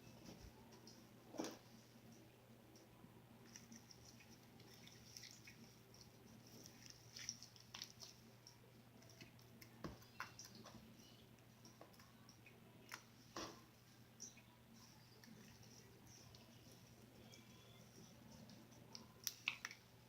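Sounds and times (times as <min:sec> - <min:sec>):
slime squishing: 0:03.4 - 0:11.0.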